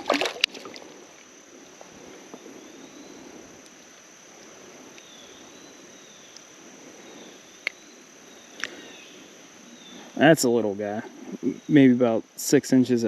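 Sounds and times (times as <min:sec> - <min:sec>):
running stream water: 0:00.0 - 0:03.5
high insect tone: 0:00.0 - 0:13.0.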